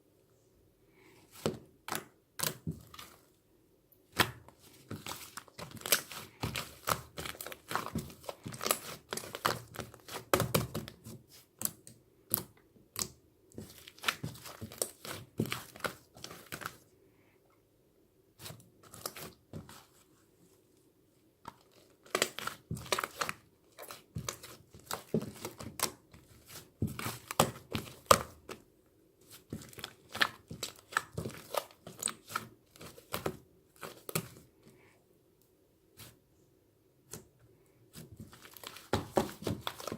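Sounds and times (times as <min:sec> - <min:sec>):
crinkling and tearing: 0:38.2 - 0:39.9.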